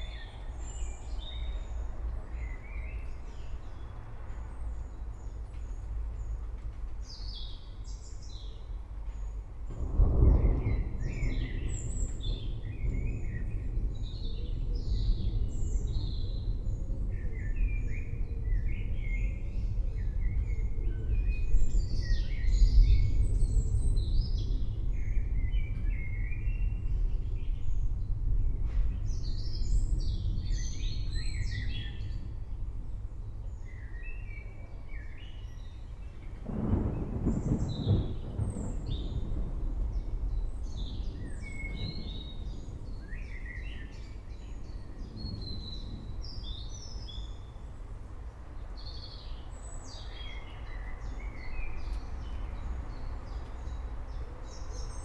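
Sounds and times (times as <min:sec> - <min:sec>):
thunder rumbling: 0:08.0 - 0:55.0
birds chirping: 0:33.2 - 0:55.0.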